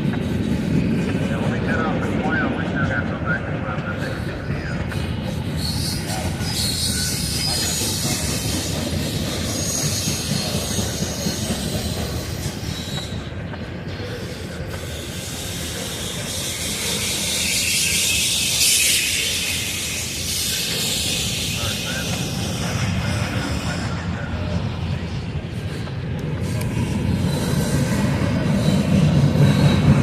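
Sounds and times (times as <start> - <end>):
faint high wheel squeal: 4.1 - 24.7, 27.0 - 30.0.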